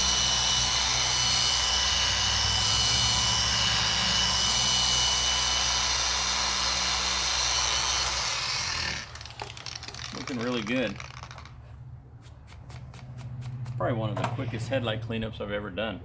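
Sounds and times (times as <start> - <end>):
electric polisher whining: 0.0 - 11.4.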